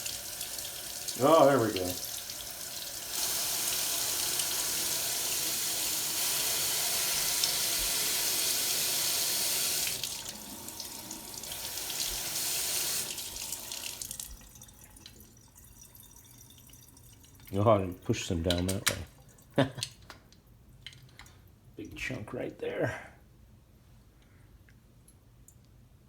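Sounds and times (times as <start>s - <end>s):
water running from a tap: 0.0s - 17.6s.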